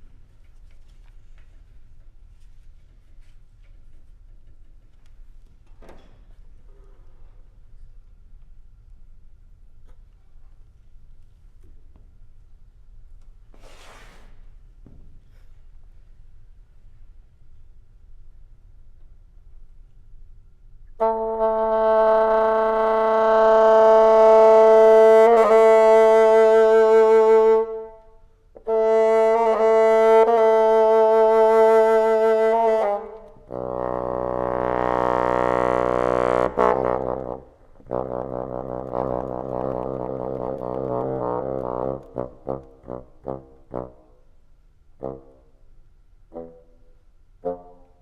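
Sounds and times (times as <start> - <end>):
solo bassoon playing: 20.9 - 44.4, 45.0 - 45.7, 46.3 - 48.0.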